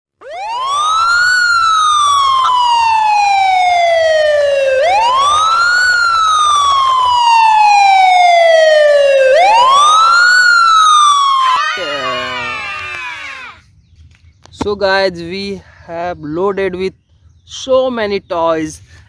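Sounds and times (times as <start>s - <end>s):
siren wailing: 0.1s - 13.4s.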